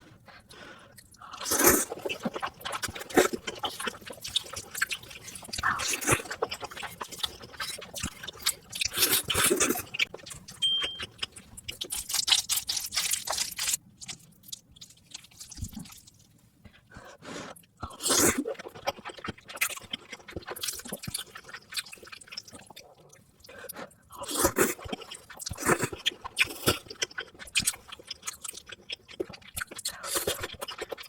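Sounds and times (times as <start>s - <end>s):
wet chewing: 0.3s - 16.8s, 17.8s - 31.0s
noodles slurping: 0.9s - 10.3s.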